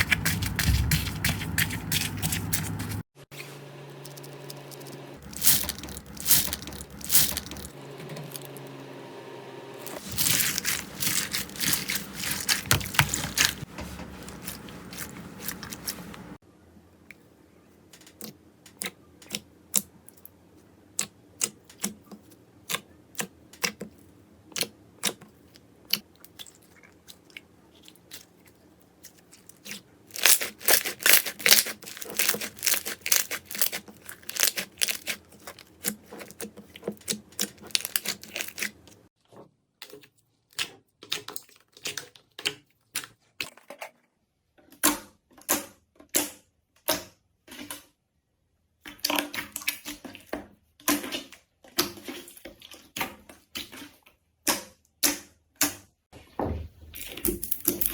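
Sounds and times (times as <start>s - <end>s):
slime squished by hand: 0.0s - 3.0s, 4.0s - 7.7s, 9.9s - 16.3s, 29.0s - 38.9s.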